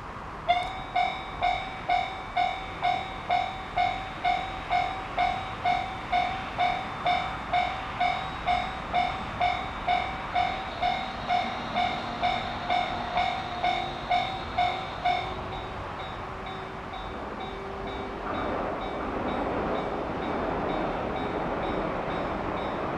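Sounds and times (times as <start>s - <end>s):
train running noise: 0.0s - 22.9s
electronic crossing bell dinging: 0.5s - 18.0s.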